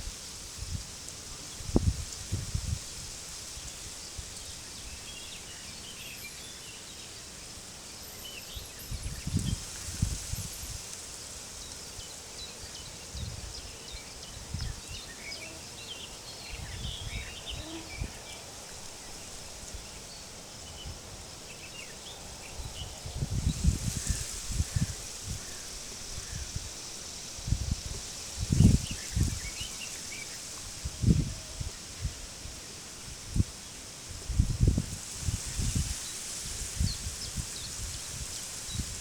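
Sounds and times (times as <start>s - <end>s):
wind rustling through wheat: 0.0s - 39.0s
wind buffeting microphone: 1.5s - 3.1s, 16.5s - 18.3s, 22.3s - 26.8s, 27.4s - 29.7s, 30.6s - 32.3s, 33.1s - 39.0s.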